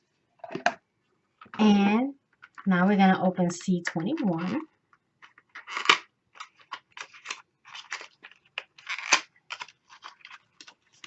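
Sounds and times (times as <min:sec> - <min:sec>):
cardboard packaging crinkling: 0:05.2 - 0:11.0.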